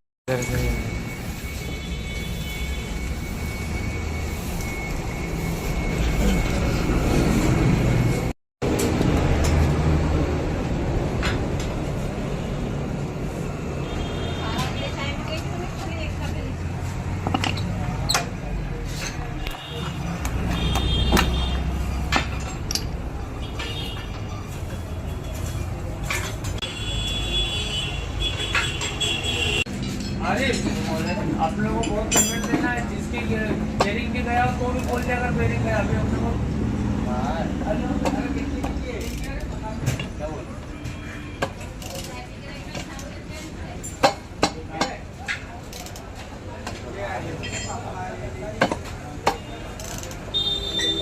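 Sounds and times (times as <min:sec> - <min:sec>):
thin steady whine: 0:00.3 - 0:08.3
sharp metallic clinks: 0:31.8 - 0:32.9, 0:47.4 - 0:48.1.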